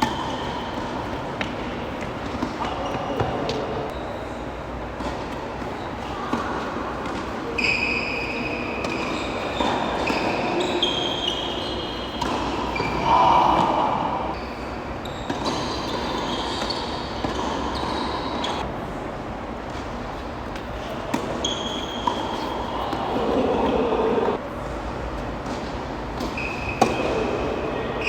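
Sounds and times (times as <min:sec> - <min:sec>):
tennis ball bouncing: 0:15.3 - 0:18.6, 0:20.5 - 0:24.4
tennis racket strokes: 0:20.1 - 0:24.4.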